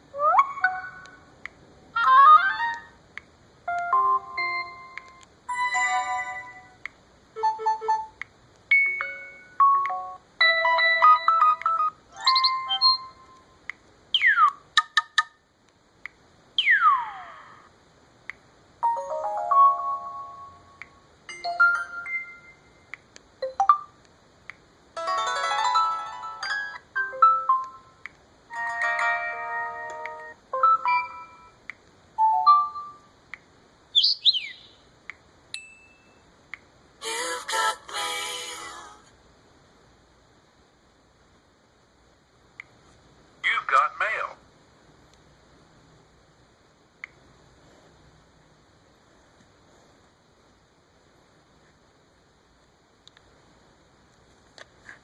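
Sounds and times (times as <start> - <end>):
phone ringtones and alert tones: 0.2 - 1.2, 3.7 - 6.8, 7.4 - 13.3, 18.8 - 20.7, 21.3 - 22.8, 25.0 - 27.9, 28.5 - 31.6, 32.2 - 33.0.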